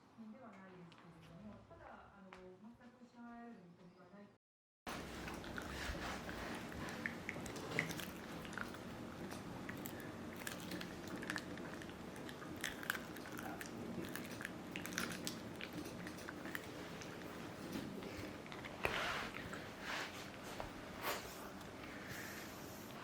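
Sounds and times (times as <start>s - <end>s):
dog chewing and crunching: 4.9s - 21.8s.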